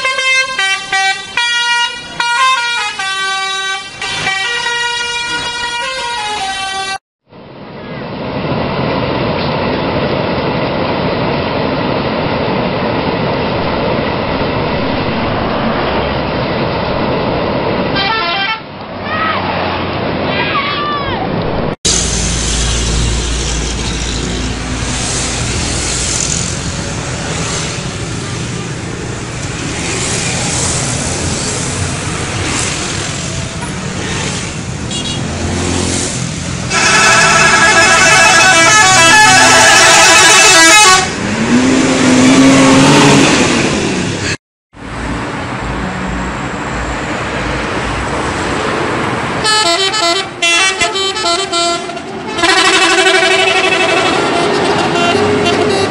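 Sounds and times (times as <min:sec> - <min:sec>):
multi-tone bus horn tune: 0:00.0 - 0:07.0, 0:17.9 - 0:18.7, 0:34.9 - 0:35.3, 0:36.7 - 0:43.1, 0:49.4 - 0:55.9
street traffic: 0:00.0 - 0:55.9
bus engine running: 0:07.4 - 0:19.1, 0:21.0 - 0:55.9.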